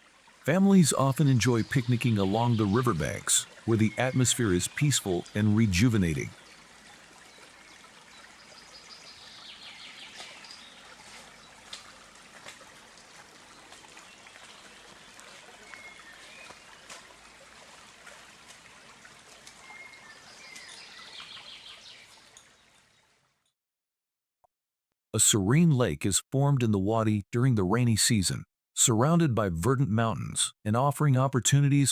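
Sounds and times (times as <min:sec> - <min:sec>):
stream water flowing: 0:00.0 - 0:22.9.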